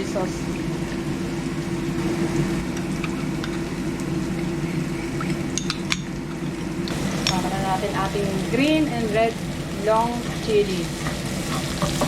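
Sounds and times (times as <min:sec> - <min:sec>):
food sizzling in a pan: 0:00.0 - 0:12.0
spoon clinking against bowl: 0:05.3 - 0:06.1.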